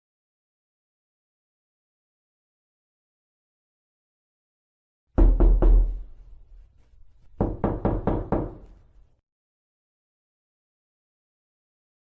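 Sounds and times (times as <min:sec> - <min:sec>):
knocking on a door: 0:05.2 - 0:06.1, 0:07.4 - 0:08.7.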